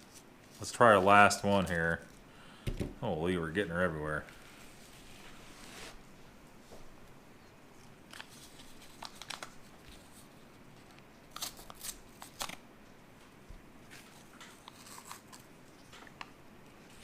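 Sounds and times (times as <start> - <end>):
packet crinkling: 8.0 - 12.6.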